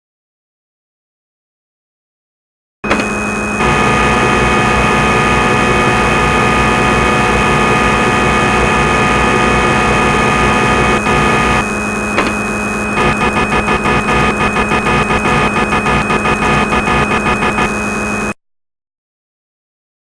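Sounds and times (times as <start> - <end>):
lathe machine humming and whining: 2.9 - 18.4.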